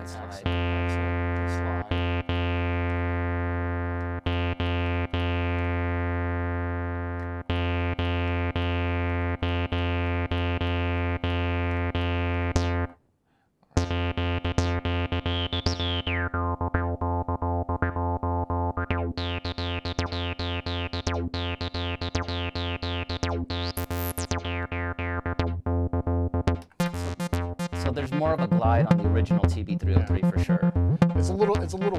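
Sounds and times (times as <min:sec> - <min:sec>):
acid synth bass line: 0:00.0 - 0:12.9, 0:13.8 - 0:31.9.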